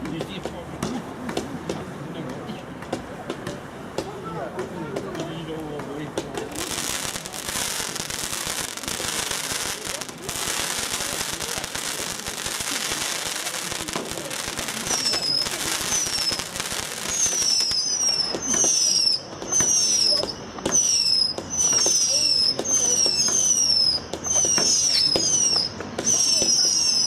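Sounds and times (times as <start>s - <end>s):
firework crackling hiss: 6.0s - 27.0s
firework whistles: 6.5s - 27.0s.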